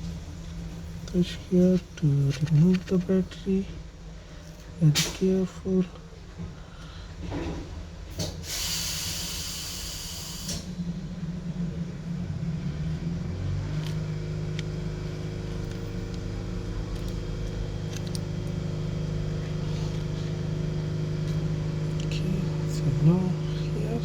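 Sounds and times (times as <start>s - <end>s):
low mechanical hum: 0.0s - 24.0s
hiss: 8.2s - 10.7s.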